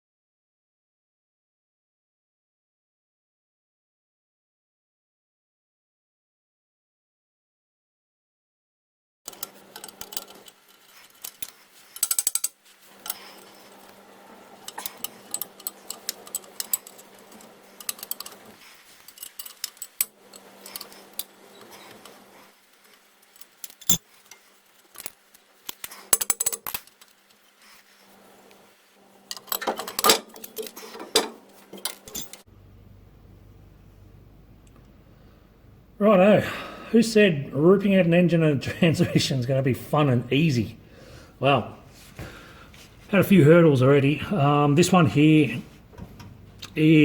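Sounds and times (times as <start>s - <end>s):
hand tools and metal parts clinking: 9.3s - 28.1s, 29.3s - 32.5s
faint steady hum: 9.3s - 47.0s.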